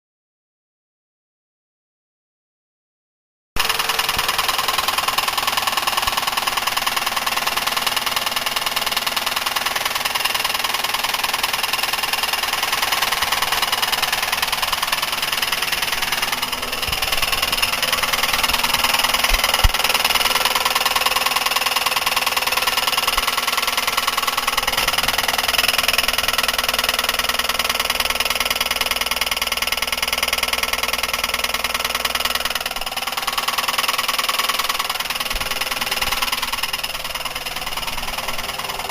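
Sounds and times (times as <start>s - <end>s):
car engine idling with rapid knock: 3.6s - 38.9s.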